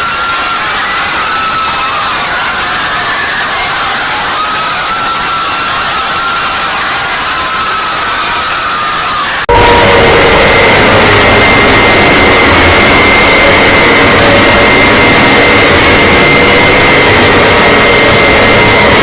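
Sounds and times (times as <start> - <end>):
siren steady pitch: 0.0 - 19.0.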